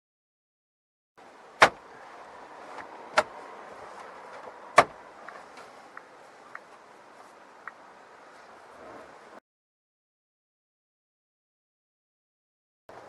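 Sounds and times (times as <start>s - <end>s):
low steady hiss: 1.2s - 9.4s.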